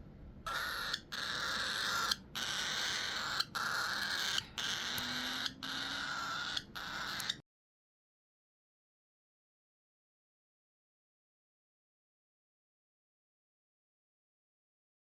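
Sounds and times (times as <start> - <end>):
cockatiel raspy hissing call: 0.5 - 7.4.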